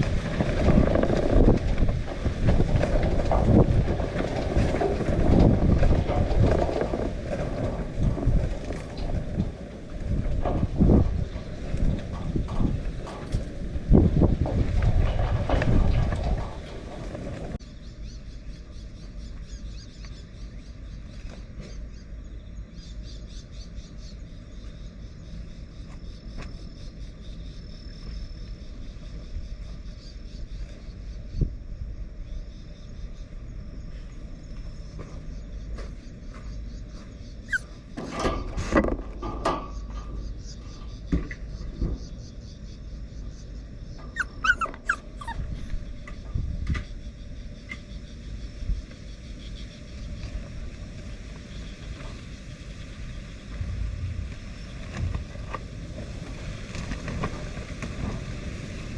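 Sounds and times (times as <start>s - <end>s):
knocks and rattles: 0.0s - 17.6s, 34.5s - 42.3s
wind buffeting microphone: 0.0s - 21.1s, 26.8s - 58.9s
insects chirping: 0.0s - 58.9s
low steady rumble: 0.0s - 58.9s
dog whining: 37.4s - 37.8s, 44.1s - 45.8s.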